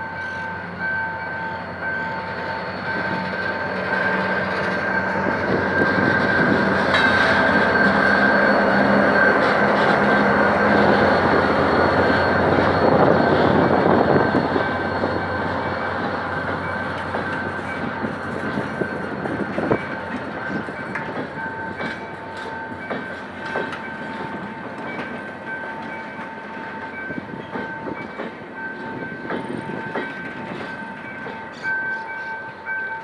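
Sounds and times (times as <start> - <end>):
train wheels clicking over rail joints: 2.6 - 26.6.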